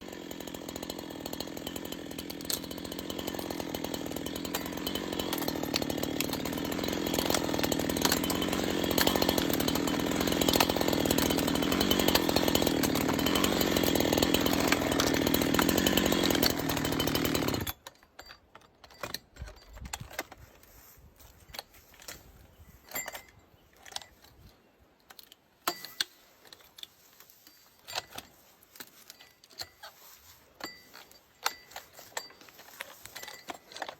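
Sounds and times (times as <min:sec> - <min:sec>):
power tool running on wood: 0:00.0 - 0:17.7.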